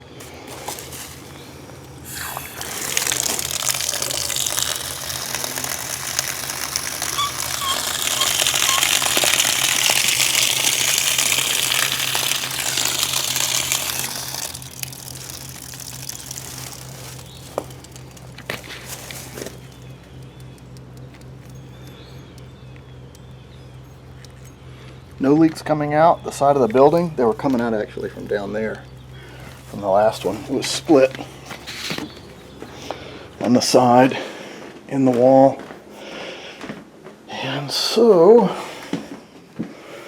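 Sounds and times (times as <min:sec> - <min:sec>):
steady low hum: 0:00.0 - 0:34.9
water gushing: 0:00.5 - 0:19.8.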